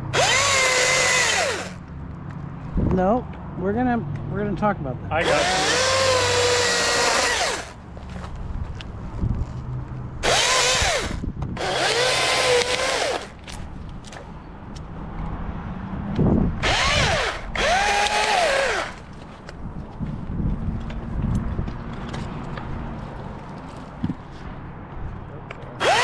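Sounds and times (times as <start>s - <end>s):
chainsaw cutting wood: 0.0s - 1.8s, 5.2s - 7.8s, 10.2s - 13.5s, 16.6s - 19.1s, 25.8s - 26.0s.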